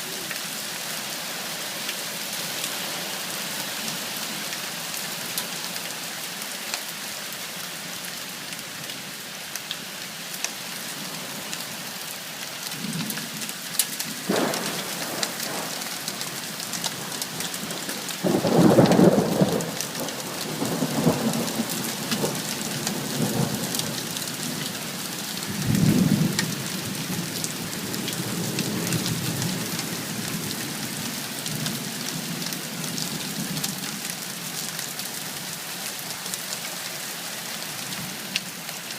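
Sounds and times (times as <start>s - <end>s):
heavy rain falling: 0.0s - 38.9s
raindrops ticking: 13.0s - 24.6s
thunder rumbling: 14.3s - 16.2s.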